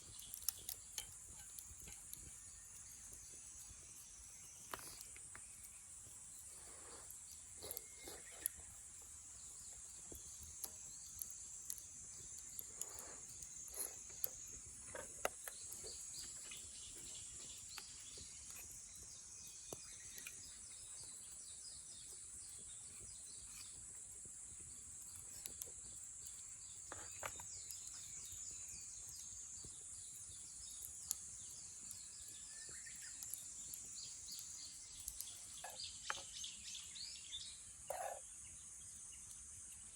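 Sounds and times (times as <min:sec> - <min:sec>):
bird chirp: 0:00.0 - 0:39.9
insect chorus: 0:00.0 - 0:39.9
faint clicks: 0:29.0 - 0:36.4.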